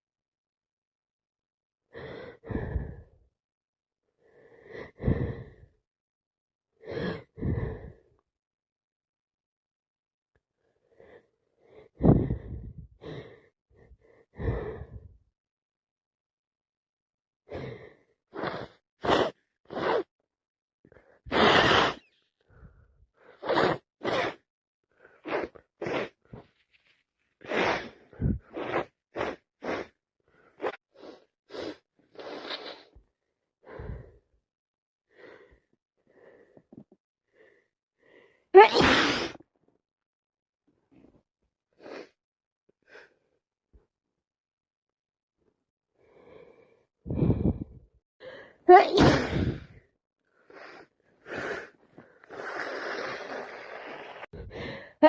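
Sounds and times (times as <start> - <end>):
breaths and sniffs: 17.5 - 20.1, 20.9 - 34.3, 40.9 - 42.2, 46.0 - 55.0
person sneezing: 38.6 - 39.4, 48.7 - 49.7.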